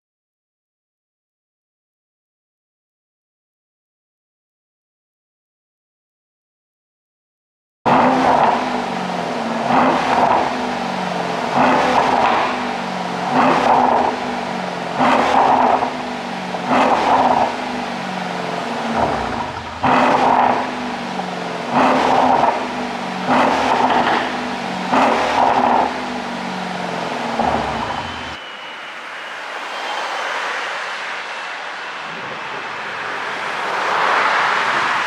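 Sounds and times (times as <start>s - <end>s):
car engine revving: 7.9s - 28.4s
car engine idling: 15.8s - 28.4s.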